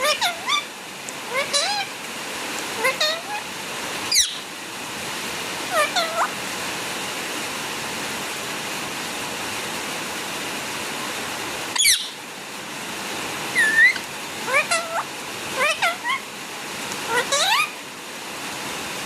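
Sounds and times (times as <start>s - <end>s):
parrot calling: 0.0s - 2.0s, 2.7s - 4.5s, 5.6s - 6.4s, 11.7s - 12.2s, 13.5s - 16.3s, 16.9s - 17.8s
steady hiss: 0.0s - 19.0s.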